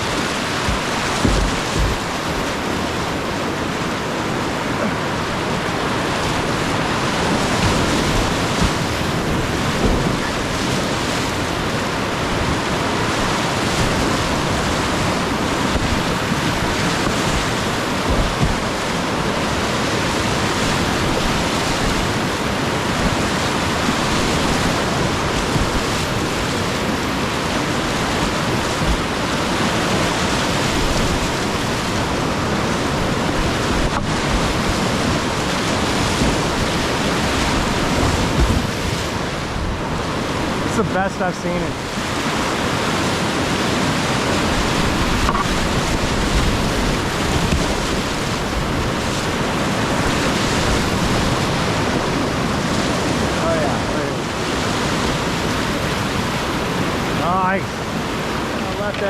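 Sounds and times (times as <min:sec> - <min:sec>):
whitewater river roaring: 0:00.0 - 0:59.0
low bumps on microphone: 0:00.6 - 0:02.5, 0:07.6 - 0:10.4.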